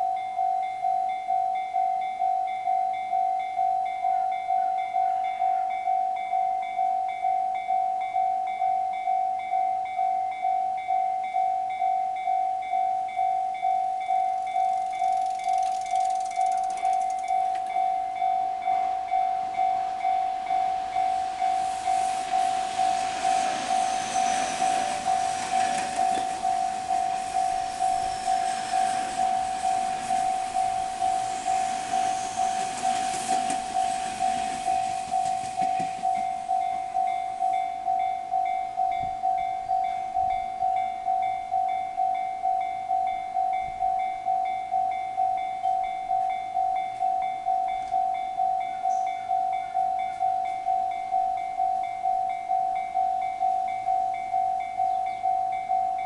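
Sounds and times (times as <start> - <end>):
level crossing bell clanging: 0.1 - 23.0, 33.3 - 56.0
train rumbling past: 14.0 - 56.0.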